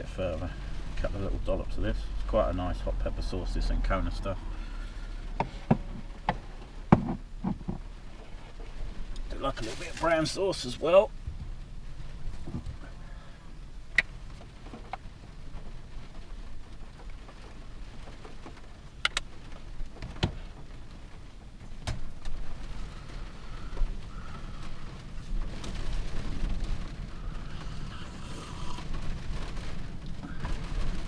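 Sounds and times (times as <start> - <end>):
rain drumming on a roof: 0.0 - 31.0
sharp knocks: 5.4 - 7.8.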